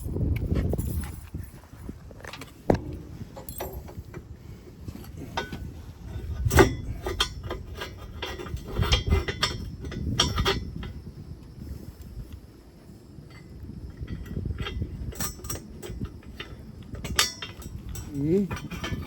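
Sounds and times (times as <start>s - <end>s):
metal tow bar clinking: 2.7s - 4.0s, 14.7s - 19.0s.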